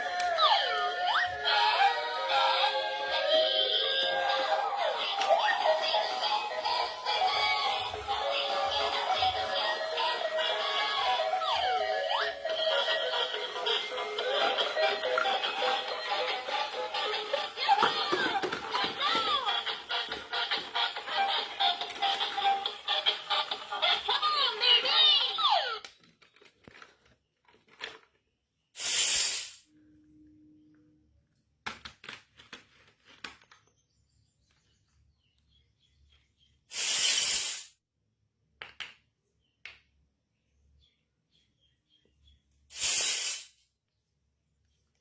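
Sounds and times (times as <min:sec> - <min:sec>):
background music: 0:00.0 - 0:23.8.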